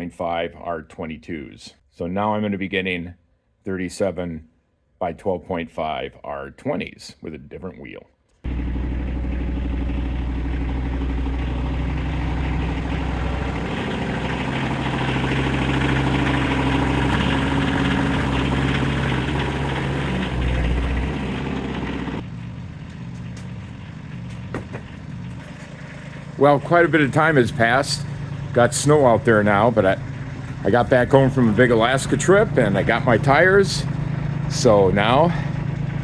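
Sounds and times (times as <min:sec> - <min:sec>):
vehicle engine running: 0:08.4 - 0:36.0.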